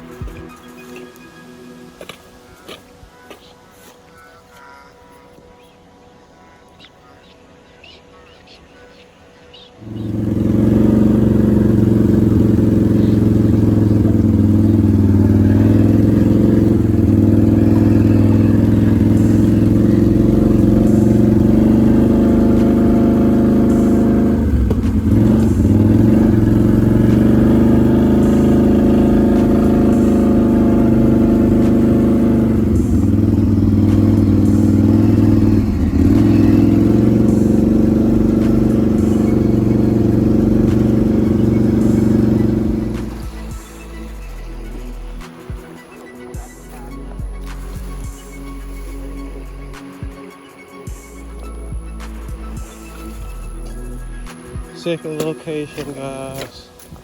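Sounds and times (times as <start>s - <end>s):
quad bike engine running: 9.8s - 45.2s.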